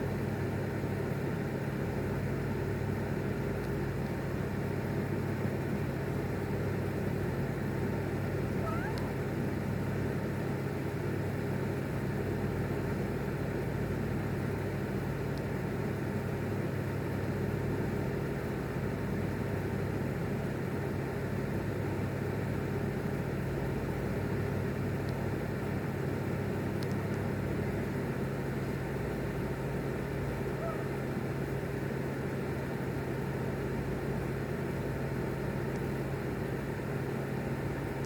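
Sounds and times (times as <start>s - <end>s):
low mechanical hum: 0.0s - 38.0s.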